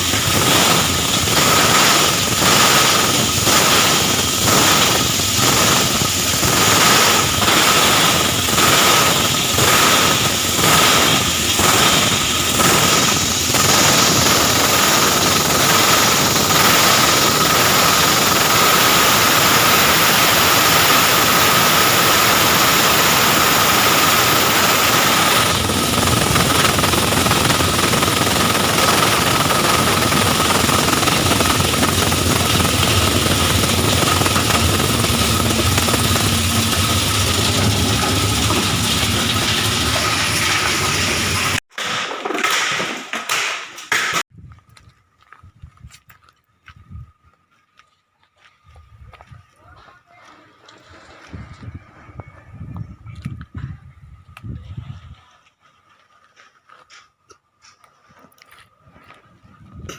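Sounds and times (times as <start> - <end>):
plastic grinder machine running: 0.0 - 43.2.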